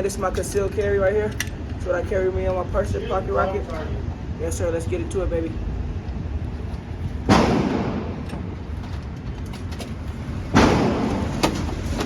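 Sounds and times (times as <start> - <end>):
gunshots echoing indoors: 7.3 - 8.2.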